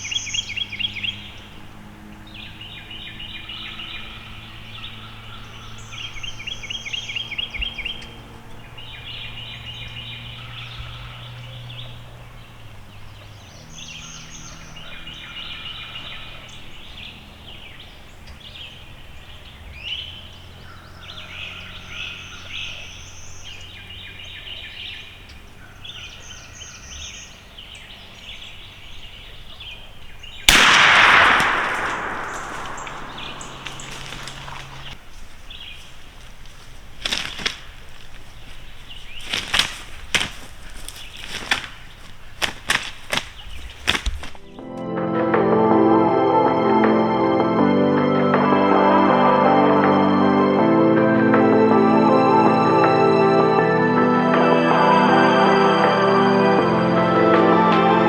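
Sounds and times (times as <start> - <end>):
songbirds trilling: 0.0 - 44.7
shotgun blast: 30.5 - 35.0.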